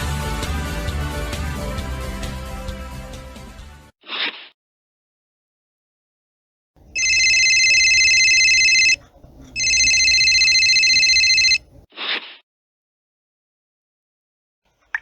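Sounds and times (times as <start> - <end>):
telephone bell ringing: 6.9 - 9.0, 9.6 - 11.7.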